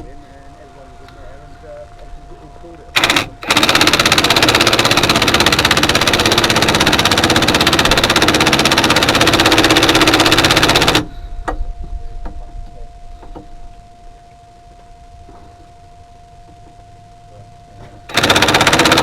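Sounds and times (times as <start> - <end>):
impact wrench hammering: 3.0 - 11.6, 18.1 - 19.0.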